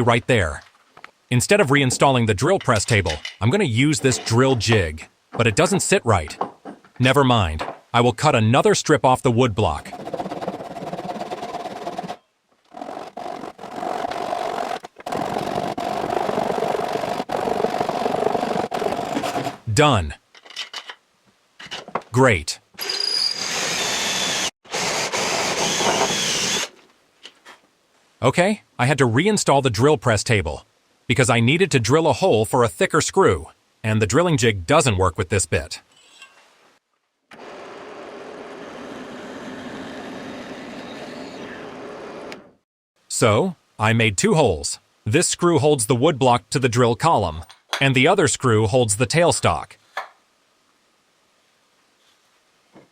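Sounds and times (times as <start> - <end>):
drill press humming: 9.9 - 19.6, 22.8 - 26.7
power saw cutting wood: 9.9 - 19.6, 22.8 - 26.7, 37.4 - 42.0.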